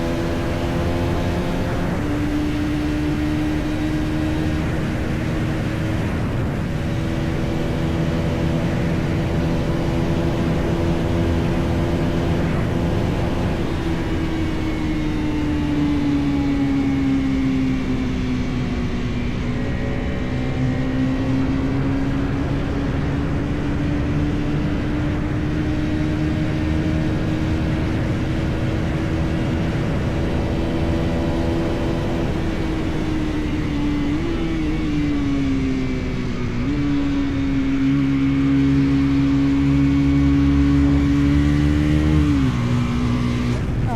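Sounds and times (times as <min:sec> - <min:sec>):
wind noise: 0:00.0 - 0:17.2, 0:39.3 - 0:43.9.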